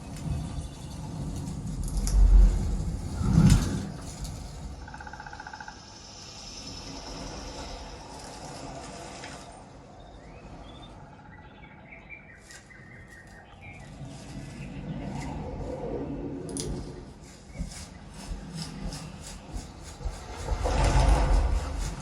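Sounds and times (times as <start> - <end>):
small birds chirping: 0.0 - 1.5, 4.2 - 15.7
steady low rumble: 0.0 - 12.4, 13.0 - 22.0.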